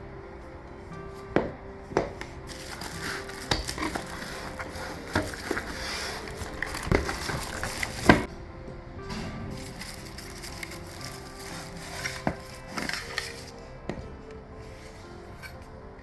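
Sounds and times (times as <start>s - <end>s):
packaging rustling and crinkling: 2.3s - 8.3s, 9.6s - 13.6s.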